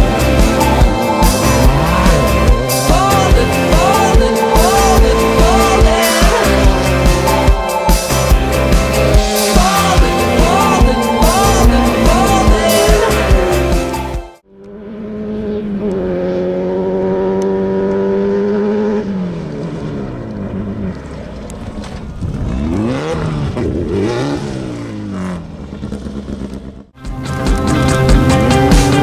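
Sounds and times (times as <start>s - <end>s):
off-road vehicle engine revving: 0.0s - 26.9s.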